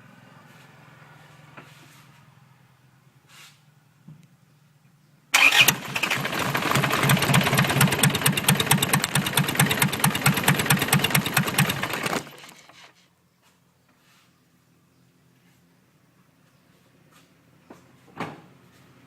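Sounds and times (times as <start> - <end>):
diesel engine clattering: 5.4 - 12.8.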